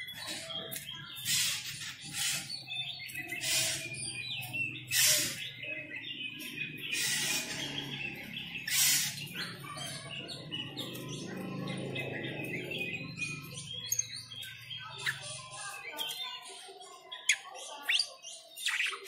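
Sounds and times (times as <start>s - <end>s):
starlings chirping: 0.0s - 19.0s
harsh hissing bird calls: 3.4s - 3.9s, 4.9s - 5.4s.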